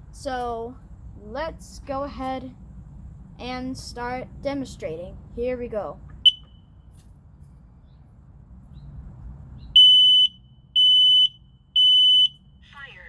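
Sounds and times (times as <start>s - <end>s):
alarm chirp: 6.2s - 6.8s, 9.8s - 12.6s
high-pitched alarm beeps: 6.2s - 6.8s, 9.8s - 12.4s.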